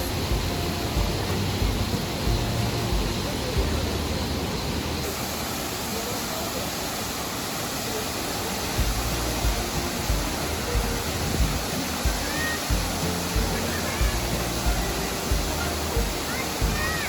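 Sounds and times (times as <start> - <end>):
low regular beat: 0.0 - 4.0, 8.8 - 16.9
soft background music: 0.0 - 5.3, 8.5 - 17.0
steady rushing noise: 0.0 - 17.0.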